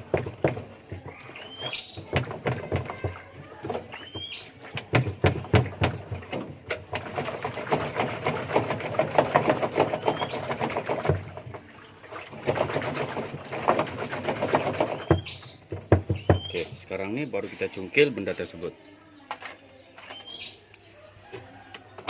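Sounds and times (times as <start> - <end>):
washing machine drum knocking: 2.0 - 11.5.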